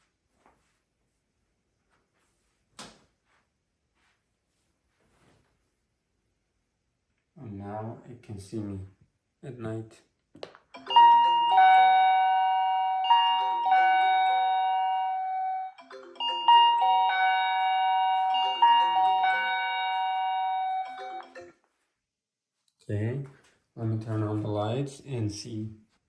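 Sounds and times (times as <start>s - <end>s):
doorbell chime tune: 10.8s - 21.6s.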